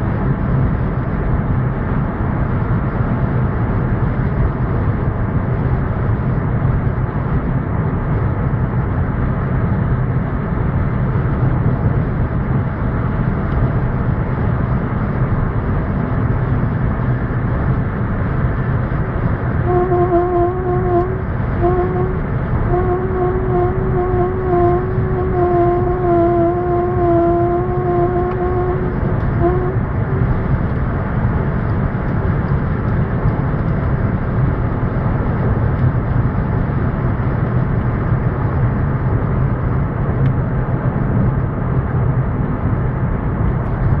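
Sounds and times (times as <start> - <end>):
road and wind noise: 0.0 - 44.0
droning tone: 18.9 - 31.6.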